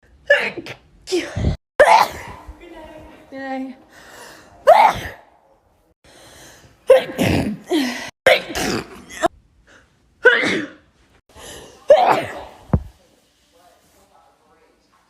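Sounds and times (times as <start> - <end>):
person sneezing: 0.3 - 2.5, 4.6 - 5.2, 6.9 - 9.3, 10.2 - 10.9, 11.5 - 12.9.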